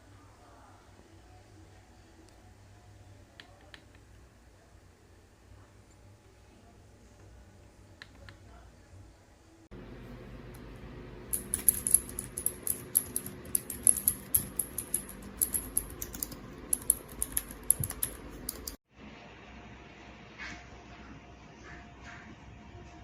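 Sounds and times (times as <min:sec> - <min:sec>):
mechanical keyboard typing: 0:11.3 - 0:18.8.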